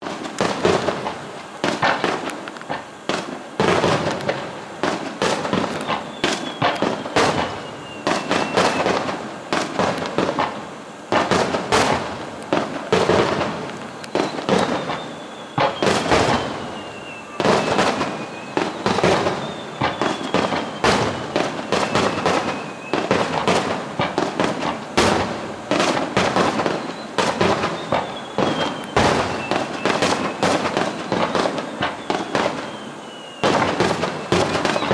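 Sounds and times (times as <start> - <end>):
falling firework whistles: 0.0 - 34.9
firework bursts and crackling bangs: 0.0 - 34.9.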